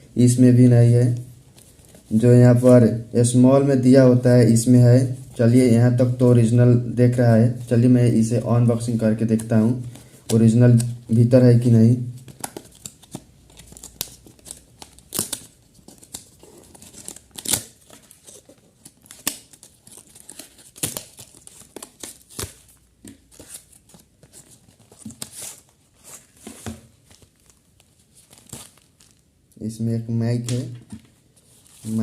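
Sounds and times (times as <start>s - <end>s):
packaging tearing and crinkling: 12.2s - 26.4s.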